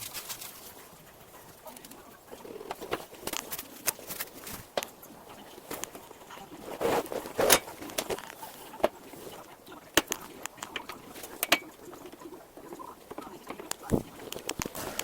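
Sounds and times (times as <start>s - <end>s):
rustling scrape: 0.0s - 4.8s, 5.4s - 9.5s, 13.8s - 15.0s
tools clicking and knocking: 10.0s - 12.3s.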